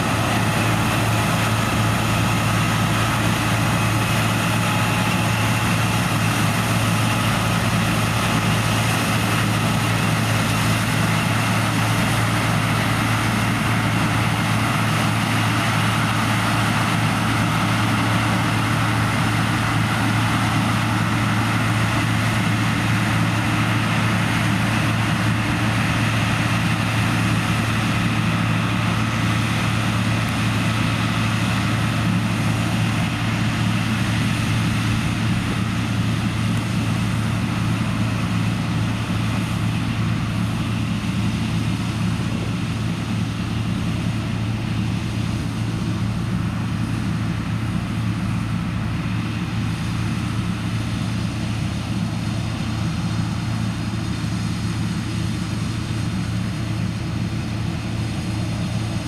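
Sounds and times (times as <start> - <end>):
diesel farm machinery droning: 0.0 - 59.0.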